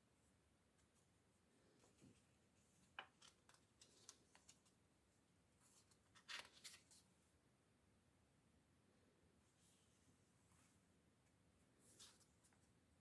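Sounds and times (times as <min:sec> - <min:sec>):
paper pages rustling and crinkling: 0:01.8 - 0:04.8, 0:05.6 - 0:07.1.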